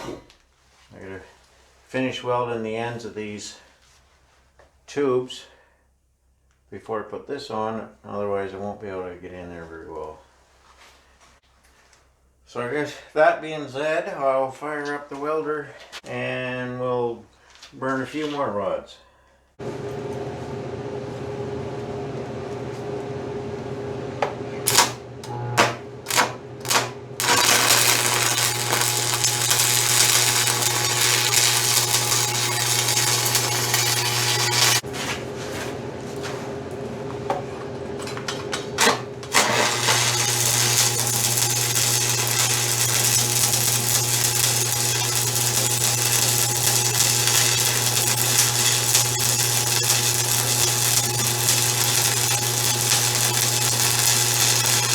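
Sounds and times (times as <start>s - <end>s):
stick welder humming: 24.2s - 35.3s, 38.0s - 54.9s
crackling welding arc: 24.7s - 34.8s, 38.8s - 54.9s.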